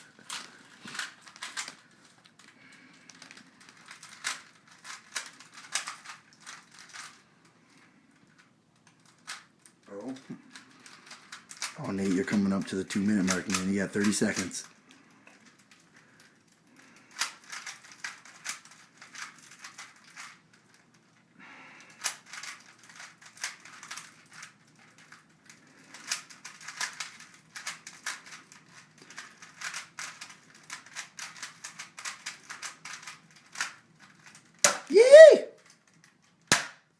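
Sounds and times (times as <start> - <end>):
puzzle cube plastic clicking: 3.1 - 7.2, 10.5 - 14.7, 17.1 - 20.4, 22.0 - 34.7
person crying out: 34.8 - 35.6.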